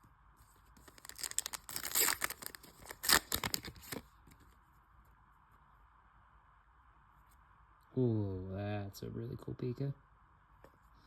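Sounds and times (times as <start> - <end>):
foil wrapper tearing and crinkling: 0.8 - 4.0.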